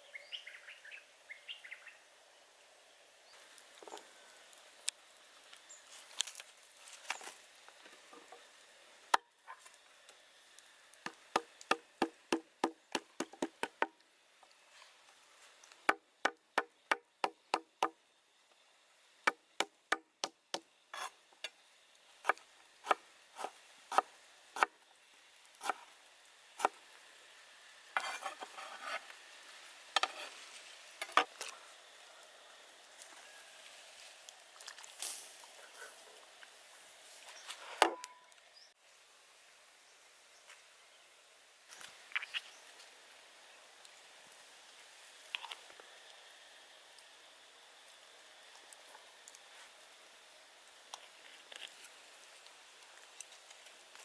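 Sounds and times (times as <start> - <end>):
blade chopping on wood: 11.1 - 13.9.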